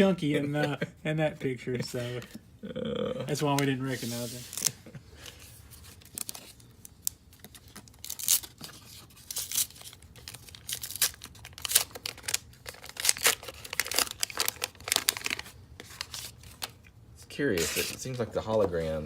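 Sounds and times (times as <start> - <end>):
card pack wrapper tearing and crinkling: 5.9 - 16.8, 17.5 - 18.6.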